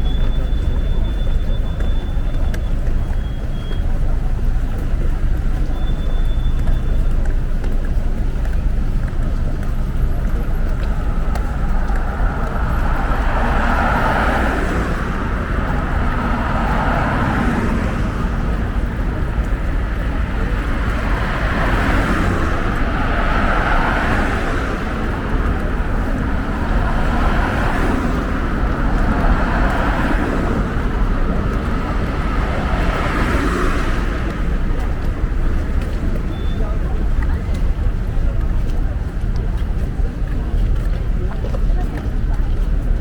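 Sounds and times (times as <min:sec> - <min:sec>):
constant deep rumble: 0:00.0 - 0:43.0
road traffic passing: 0:00.0 - 0:43.0.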